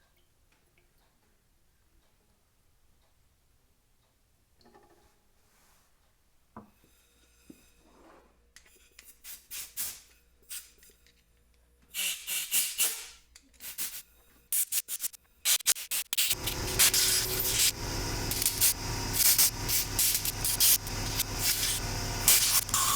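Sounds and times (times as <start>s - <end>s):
loud continuous hiss: 14.6s - 22.9s
scrubbing strokes: 15.9s - 22.9s.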